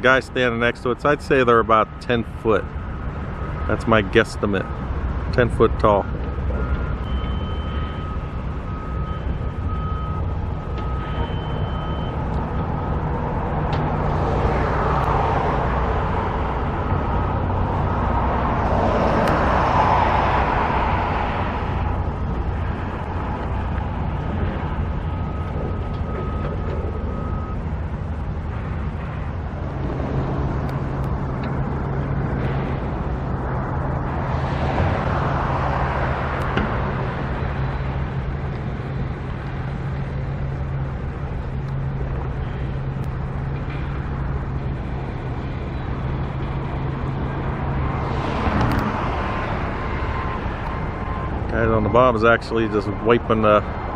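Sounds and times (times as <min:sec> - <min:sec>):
low engine hum: 0:00.0 - 0:53.9
vehicles passing: 0:00.0 - 0:53.9
faint beeping tone: 0:06.0 - 0:12.2, 0:25.0 - 0:27.6.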